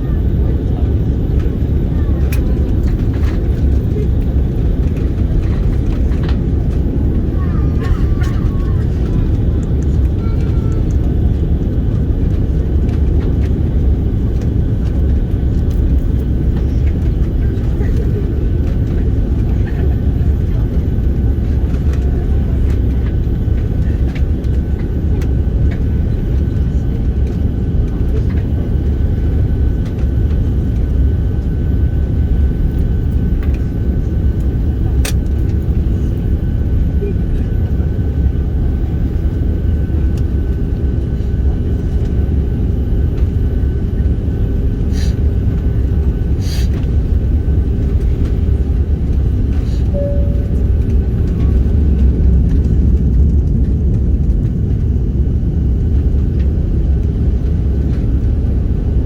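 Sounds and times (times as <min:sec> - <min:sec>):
airliner engine rumble: 0:00.0 - 0:59.0
faint steady whine: 0:47.6 - 0:53.1
brief short tone: 0:49.9 - 0:51.2.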